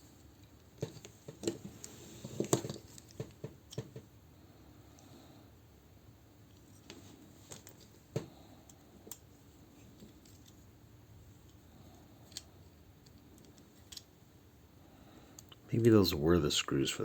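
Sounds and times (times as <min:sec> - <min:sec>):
plastic parts clicking together: 0:12.3 - 0:14.1.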